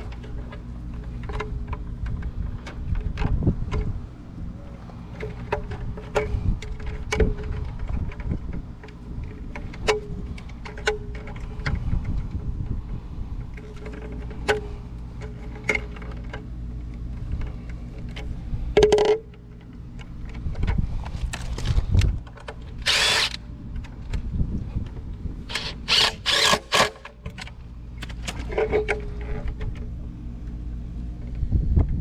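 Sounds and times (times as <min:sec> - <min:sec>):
steady low hum: 0:00.0 - 0:32.0
power drill running: 0:22.8 - 0:23.4, 0:25.5 - 0:27.0.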